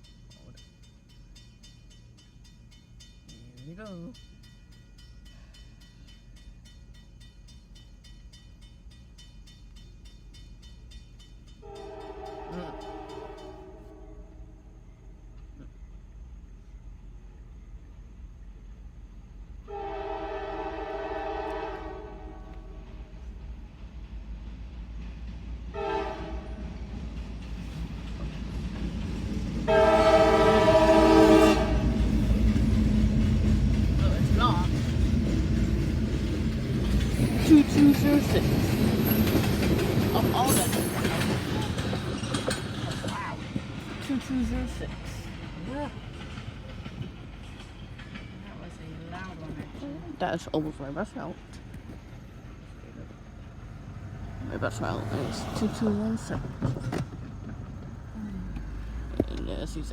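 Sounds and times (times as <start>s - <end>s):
rumble of approaching train: 0.0s - 59.9s
locomotive air horn blast: 11.6s - 14.5s, 19.7s - 22.8s, 25.7s - 26.6s, 29.7s - 32.1s.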